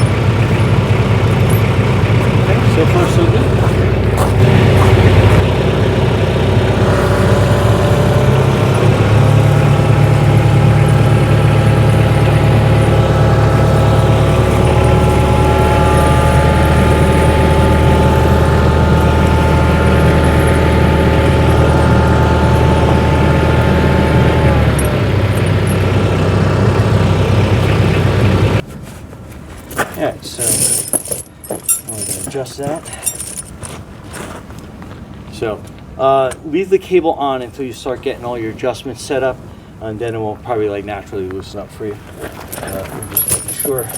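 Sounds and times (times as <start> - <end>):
tractor engine running: 0.0 - 28.6.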